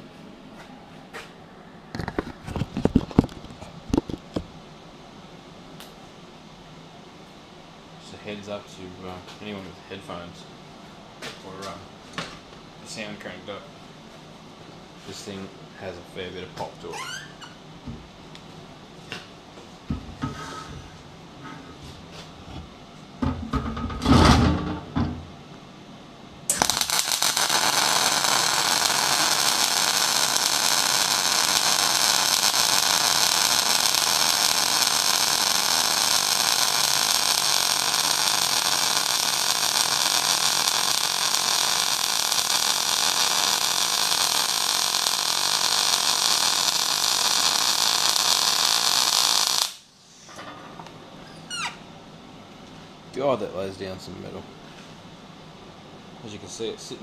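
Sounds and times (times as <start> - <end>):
welding arc crackling hiss: 26.5 - 50.3.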